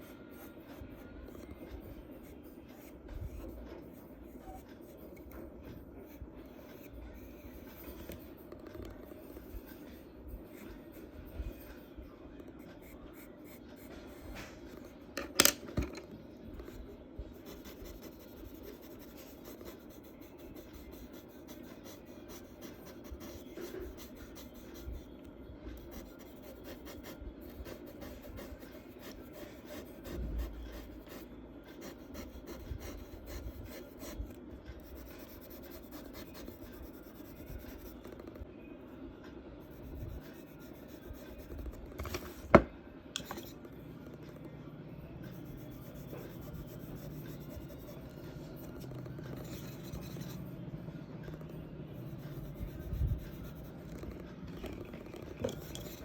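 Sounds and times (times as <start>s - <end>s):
charcoal scratching on paper: 17.4s - 25.1s, 25.8s - 38.3s, 39.6s - 42.5s, 45.3s - 50.4s.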